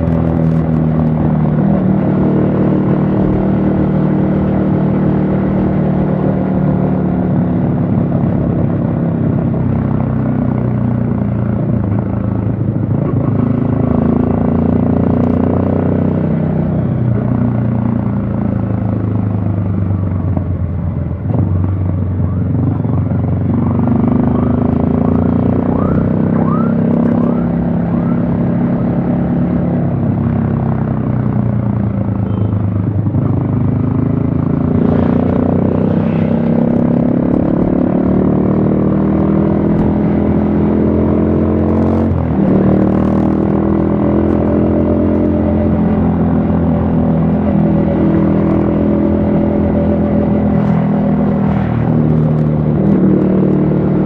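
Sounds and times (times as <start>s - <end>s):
motorcycle engine revving: 21.2s - 54.0s.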